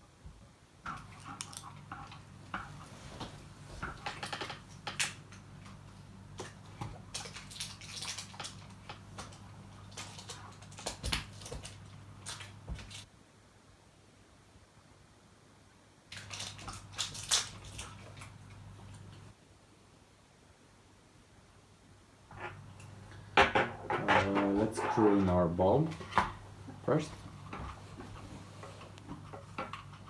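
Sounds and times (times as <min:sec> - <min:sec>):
plastic parts clicking and rustling: 0:00.9 - 0:13.1, 0:16.1 - 0:19.2, 0:22.4 - 0:30.0
steady low hum: 0:22.3 - 0:30.0.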